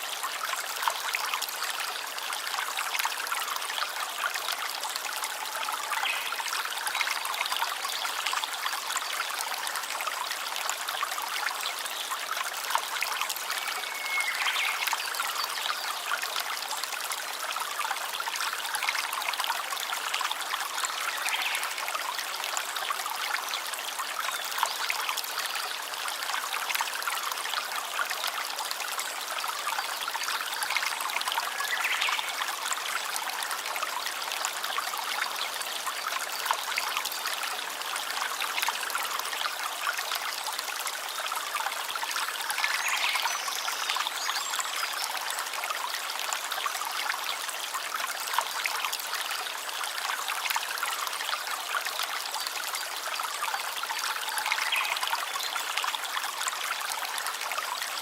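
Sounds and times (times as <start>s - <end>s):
stream babbling over stones: 0.0s - 58.0s.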